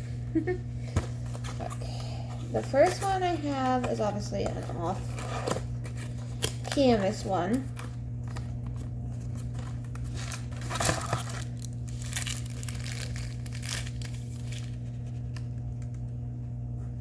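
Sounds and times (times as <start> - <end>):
steady low hum: 0.0 - 17.0
packaging being torn and crinkled: 7.7 - 15.4.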